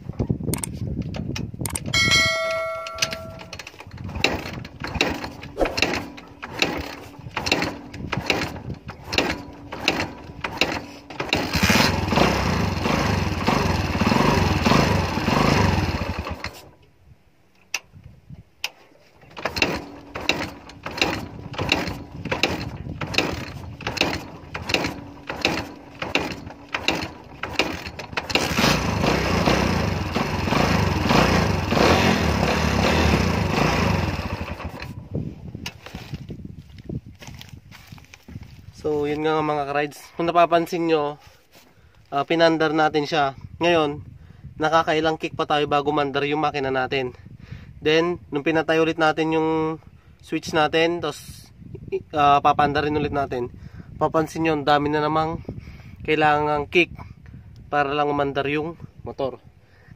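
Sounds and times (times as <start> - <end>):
motorcycle engine kick-starting: 0.5 - 16.8, 18.7 - 36.3
motorcycle engine running: 2.0 - 16.7, 19.6 - 35.1.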